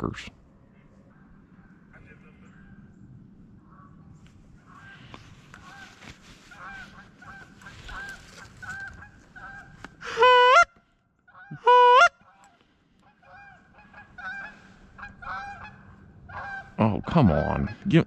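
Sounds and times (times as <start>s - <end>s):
geese honking in distance: 3.6s - 18.0s
goose call honks: 6.5s - 10.7s, 11.4s - 12.5s, 13.1s - 17.9s.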